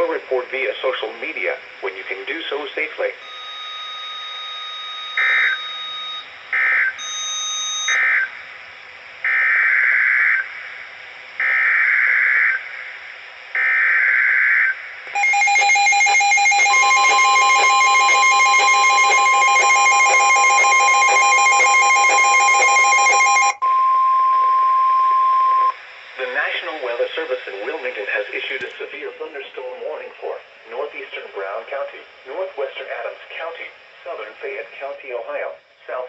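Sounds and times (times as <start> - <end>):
alert data bursts: 15.1 - 23.7
two-tone attention signal: 15.2 - 25.8.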